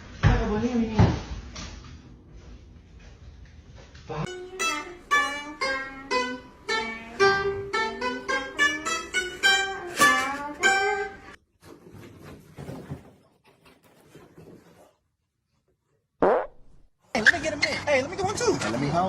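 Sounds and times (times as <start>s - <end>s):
plucked guitar melody: 4.3s - 11.4s.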